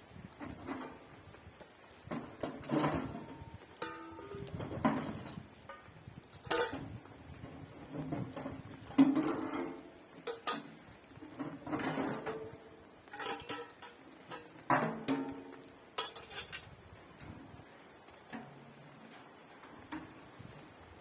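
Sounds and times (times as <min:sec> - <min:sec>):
metal cookware clinking: 0:02.8 - 0:05.8, 0:06.4 - 0:06.9, 0:10.3 - 0:10.7, 0:13.1 - 0:16.6.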